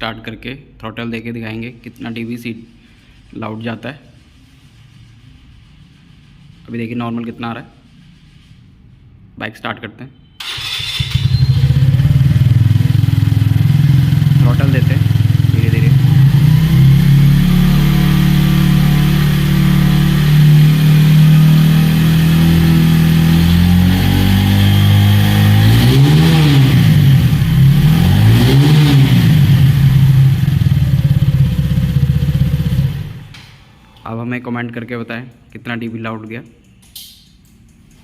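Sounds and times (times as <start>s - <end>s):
motorcycle engine idling and revving: 10.5s - 33.3s.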